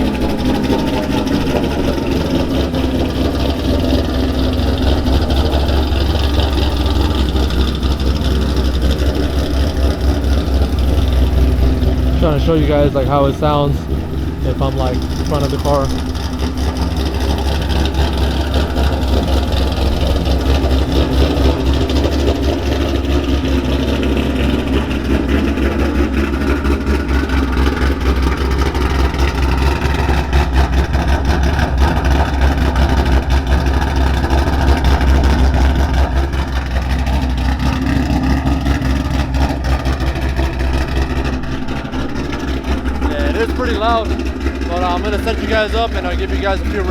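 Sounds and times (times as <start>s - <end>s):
car engine idling loud and lumpy: 0.0s - 46.9s.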